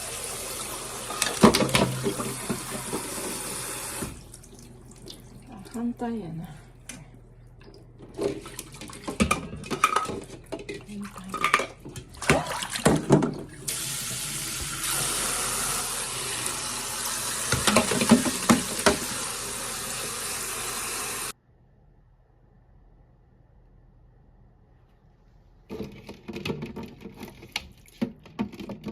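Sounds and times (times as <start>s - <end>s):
dishes clattering in sink: 1.1s - 3.4s, 8.0s - 13.7s, 17.4s - 19.2s
tap running into sink: 1.1s - 4.2s, 11.5s - 19.6s.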